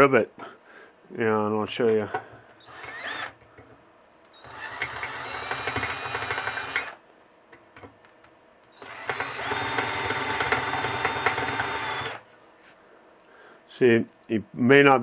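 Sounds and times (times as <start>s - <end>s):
electric drill grinding rivet: 2.6s - 3.4s, 4.4s - 7.0s, 8.8s - 12.4s.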